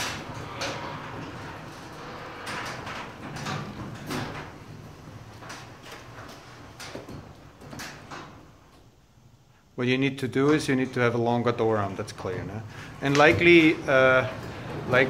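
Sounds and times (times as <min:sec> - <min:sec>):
garage door opener motor humming: 0:00.0 - 0:09.1, 0:12.7 - 0:15.0.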